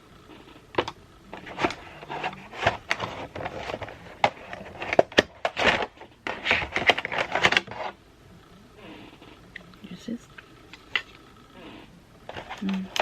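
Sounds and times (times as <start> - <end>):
packaging rustling and crinkling: 0.3 - 8.0, 12.3 - 13.0.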